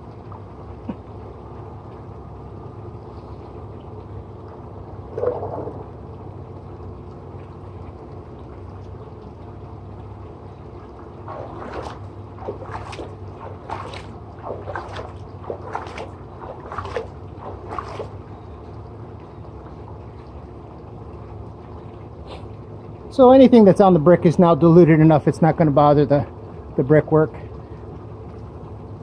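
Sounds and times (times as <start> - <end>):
steady low hum: 0.0 - 29.0
water splashing over brickwork: 10.1 - 18.7.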